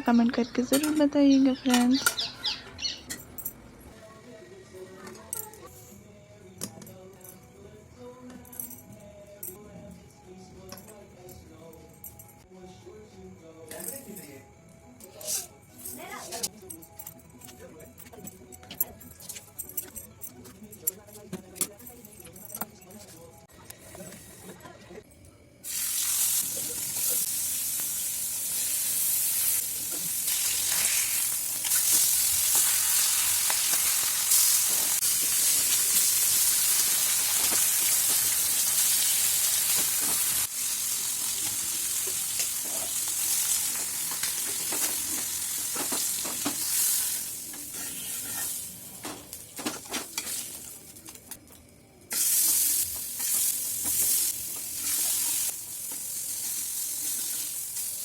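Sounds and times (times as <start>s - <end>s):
food sizzling in a pan: 25.6s - 50.9s, 52.1s - 58.0s
utensil stirring and scraping: 47.7s - 48.6s.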